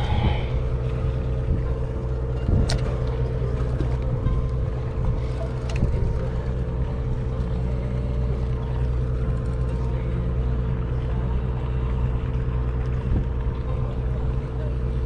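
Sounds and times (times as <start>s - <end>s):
boat engine drone: 0.0s - 15.0s.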